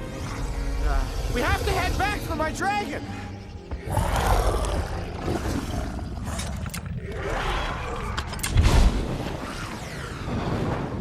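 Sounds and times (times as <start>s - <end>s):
dragon growling roar: 3.8s - 8.5s.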